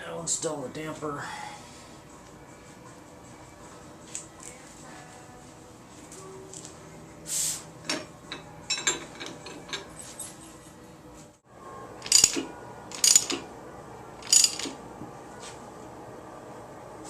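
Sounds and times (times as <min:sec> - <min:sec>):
metal tools clinking and rubbing: 0:07.8 - 0:10.9, 0:12.0 - 0:13.4, 0:14.2 - 0:14.8.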